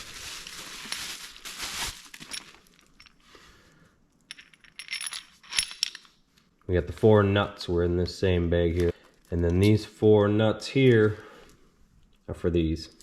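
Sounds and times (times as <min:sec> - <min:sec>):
plastic bag rustling: 0:00.0 - 0:03.0
steel bolts and nuts clinking: 0:04.2 - 0:06.2.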